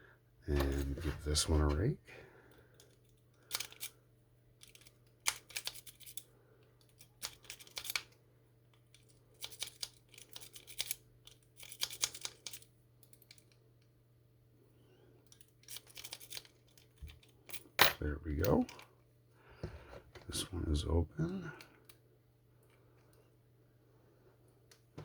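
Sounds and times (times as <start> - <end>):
lock pick clicking and scraping: 4.6 - 6.2, 6.8 - 8.1.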